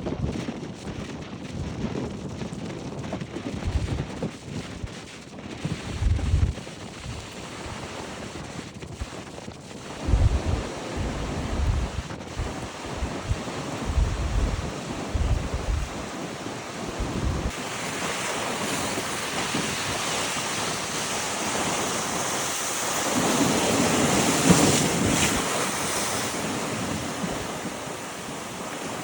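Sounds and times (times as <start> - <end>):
wind buffeting microphone: 0.0 - 29.0
sea surf breaking: 9.8 - 29.0.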